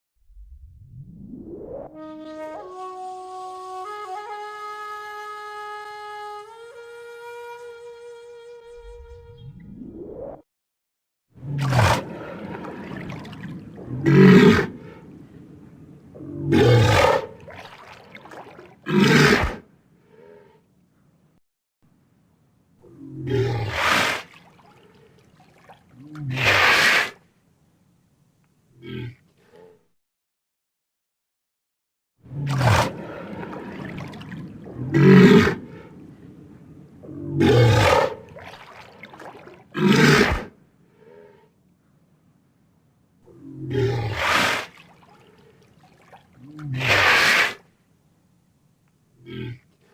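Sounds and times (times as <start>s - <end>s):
faint steady background: 24.3s - 29.9s, 32.3s - 46.9s, 47.6s - 49.9s
walrus grunting: 49.2s - 49.7s.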